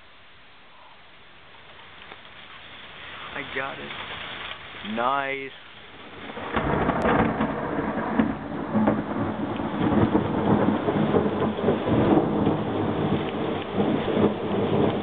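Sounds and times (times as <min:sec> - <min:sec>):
heavy rain: 0:00.0 - 0:15.0
thunder rumble: 0:05.8 - 0:15.0.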